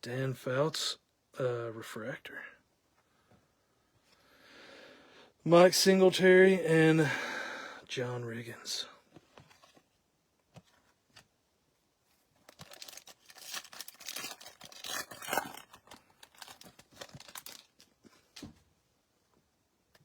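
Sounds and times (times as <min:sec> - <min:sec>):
foil wrapper tearing and crinkling: 0:12.4 - 0:18.4.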